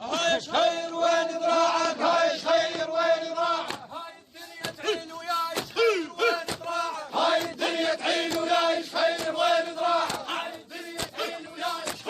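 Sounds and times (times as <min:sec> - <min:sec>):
men chanting in unison: 0:00.0 - 0:12.0
sharp rhythmic hits: 0:04.6 - 0:08.5.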